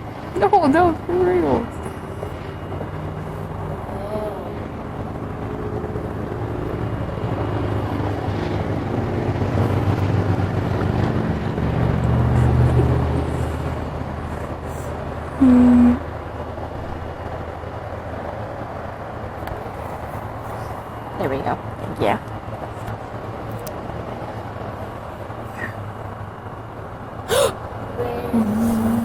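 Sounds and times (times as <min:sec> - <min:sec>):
loud hum-like tone: 0:14.3 - 0:16.2, 0:27.3 - 0:29.0.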